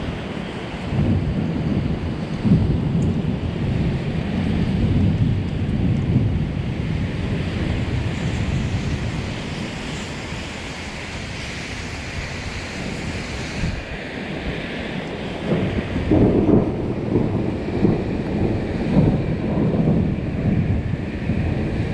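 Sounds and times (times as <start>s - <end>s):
thunder rumbling: 0.0s - 21.9s
wind buffeting microphone: 0.0s - 21.9s
wind hissing: 6.3s - 16.1s.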